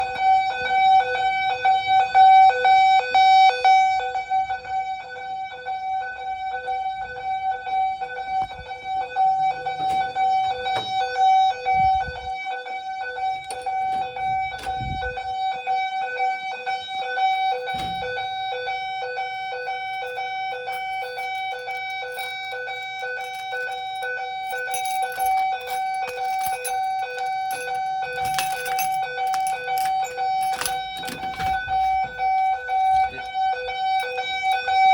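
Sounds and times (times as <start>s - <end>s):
fire alarm tone: 0.0s - 34.9s
dull knocks: 8.2s - 12.0s.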